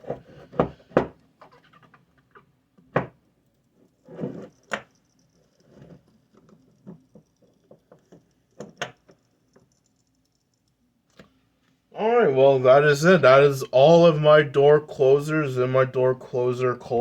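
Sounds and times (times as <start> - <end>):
small ticks and clicks: 3.4 - 11.3.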